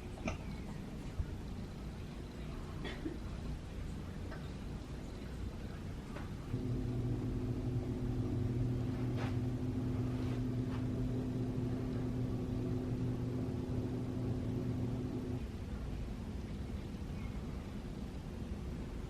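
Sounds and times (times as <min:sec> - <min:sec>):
low motor hum: 0:06.3 - 0:15.6.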